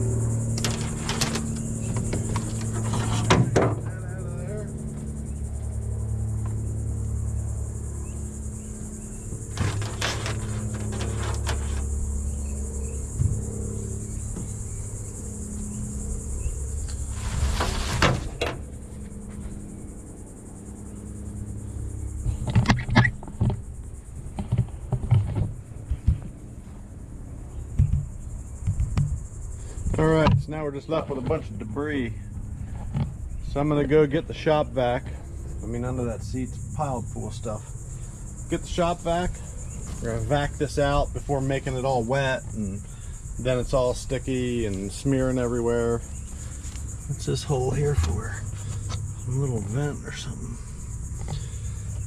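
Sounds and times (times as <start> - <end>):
crickets chirring: 0.0 - 52.0
low steady hum: 0.0 - 52.0
knocks and rattles in metal boat: 0.6 - 4.0, 9.3 - 12.0.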